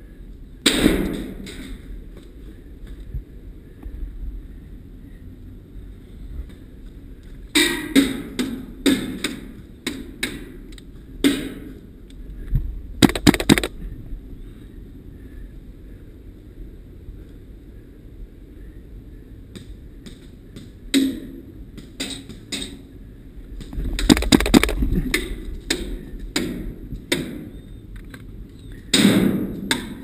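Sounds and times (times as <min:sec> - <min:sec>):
airsoft gun shots: 0:13.0 - 0:13.7, 0:24.1 - 0:24.8.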